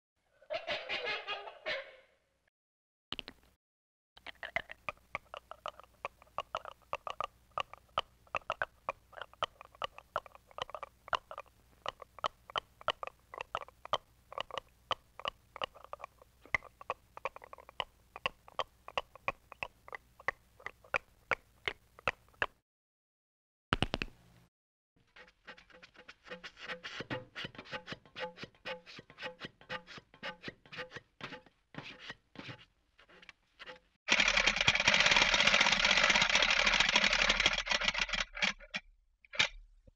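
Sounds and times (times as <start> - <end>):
cartoon crunching bites: 4.2 - 14.6.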